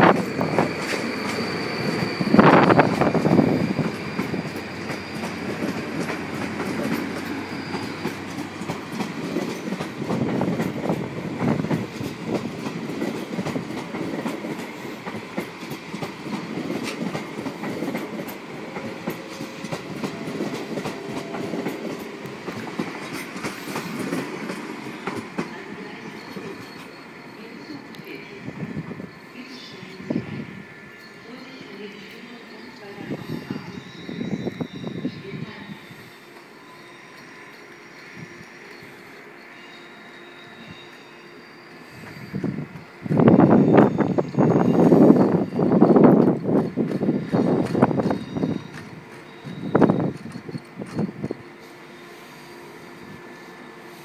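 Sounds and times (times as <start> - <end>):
high wheel squeal: 0.0 - 10.0, 22.9 - 54.0
train wheels clattering over rails: 0.0 - 27.9, 41.7 - 51.6.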